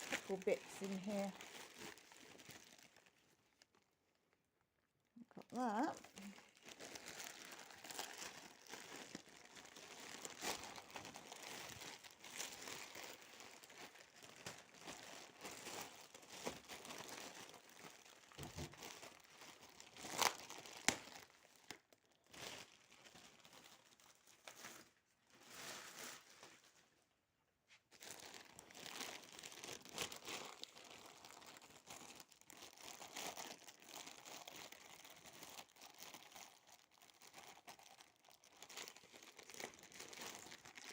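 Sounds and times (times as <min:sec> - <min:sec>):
packaging crinkling and rustling: 0:00.0 - 0:04.0, 0:05.4 - 0:27.0, 0:27.9 - 0:40.9
packaging tearing: 0:06.0 - 0:21.8, 0:28.0 - 0:40.9.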